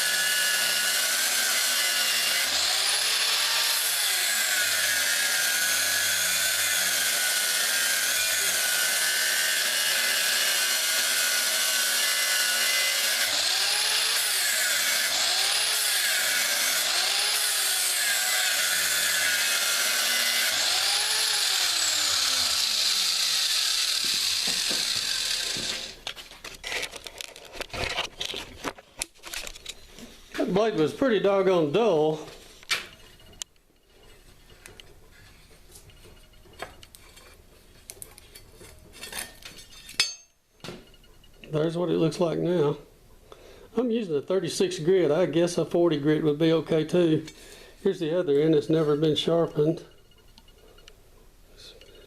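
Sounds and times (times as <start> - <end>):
power tool grinding blade edge: 0.0 - 26.9
clicks and handling noises: 26.0 - 30.2.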